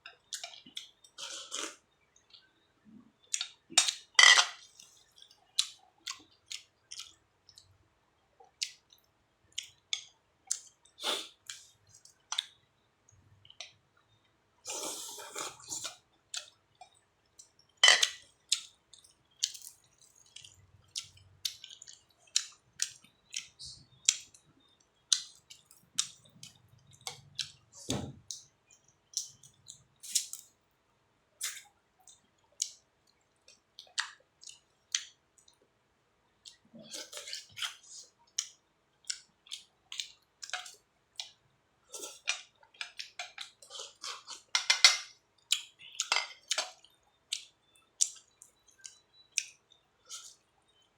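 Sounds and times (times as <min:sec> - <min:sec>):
chewing: 0:14.7 - 0:24.4, 0:36.4 - 0:44.5, 0:45.5 - 0:50.9.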